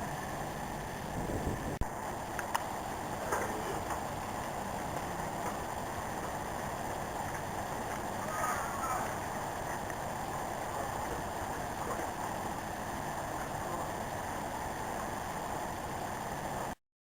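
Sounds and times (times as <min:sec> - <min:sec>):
steady rushing outdoor noise: 0:00.0 - 0:16.8.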